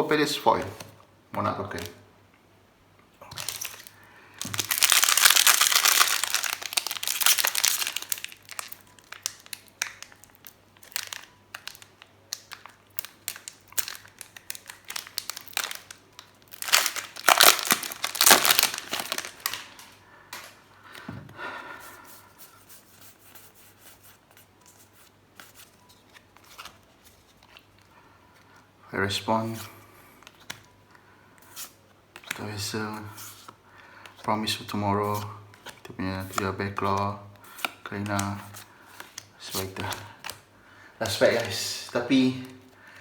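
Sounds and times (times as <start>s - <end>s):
foil wrapper crinkling and tearing: 3.3s - 20.0s.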